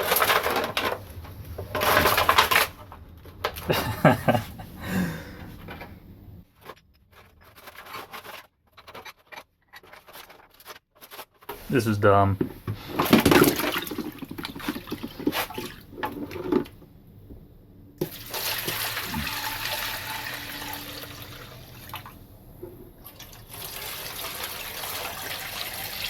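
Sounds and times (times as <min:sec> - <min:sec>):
clicks and knocks of handled parts: 0:05.4 - 0:11.6
liquid pouring and splashing: 0:13.0 - 0:16.3, 0:18.0 - 0:22.2, 0:23.0 - 0:26.0.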